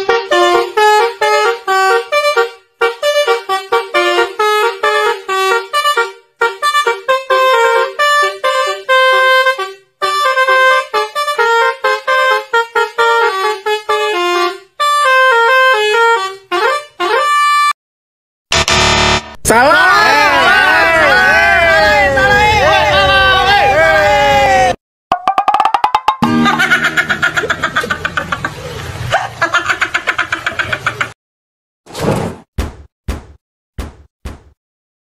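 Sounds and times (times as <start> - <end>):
truck air horn tooting a melody: 0.0 - 17.8, 18.6 - 19.4, 26.2 - 27.3.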